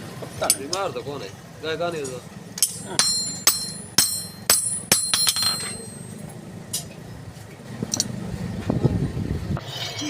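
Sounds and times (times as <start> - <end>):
hammer striking steel: 2.6 - 6.2.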